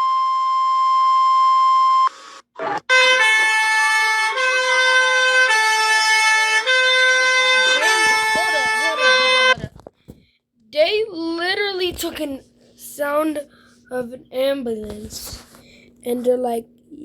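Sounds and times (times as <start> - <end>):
two-tone hi-lo siren: 0.0 - 9.6
wailing siren tone: 0.0 - 9.6.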